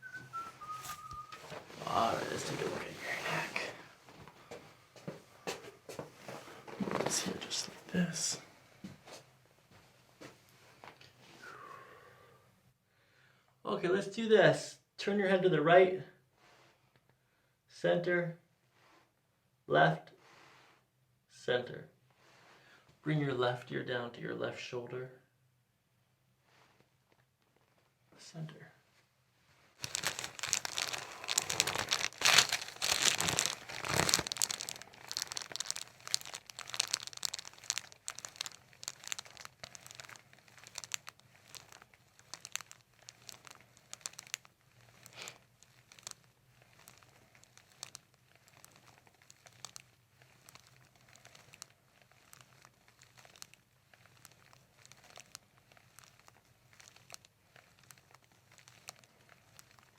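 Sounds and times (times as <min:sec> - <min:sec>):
paper crinkling and rustling: 0:00.0 - 0:04.3, 0:05.5 - 0:08.1, 0:29.8 - 0:59.9.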